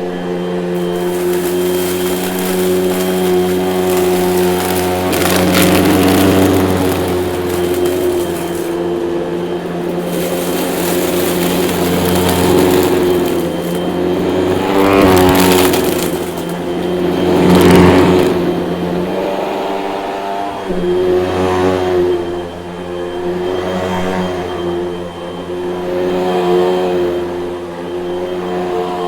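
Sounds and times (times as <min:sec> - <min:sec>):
vacuum cleaner motor humming: 0:00.8 - 0:18.4.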